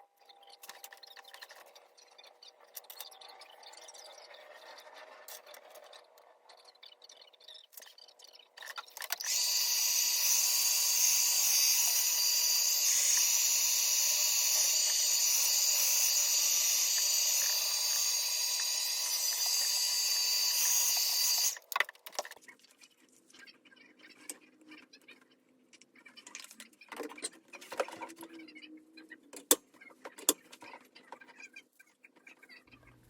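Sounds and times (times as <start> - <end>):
hair dryer blowing: 9.3 - 21.6.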